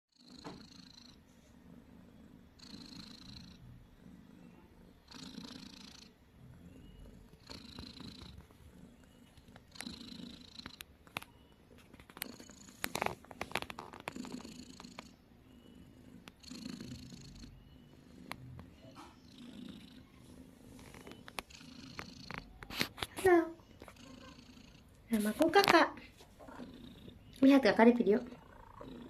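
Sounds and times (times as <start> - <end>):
cat snoring breaths: 0.2 - 11.5, 12.1 - 25.0, 26.0 - 27.4, 28.4 - 29.0.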